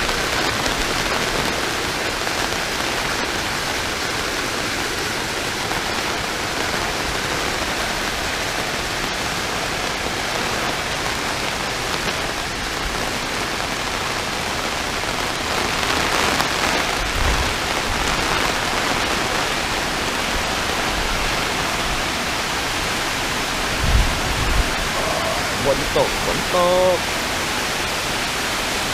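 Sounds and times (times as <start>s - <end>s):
heavy rain falling: 0.0s - 28.9s
gusty wind: 15.0s - 28.9s
wind rumble on microphone: 16.4s - 26.5s.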